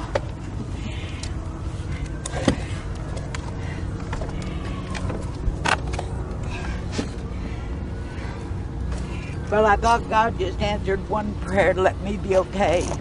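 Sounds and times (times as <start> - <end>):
low engine-like rumble: 0.0 - 13.0.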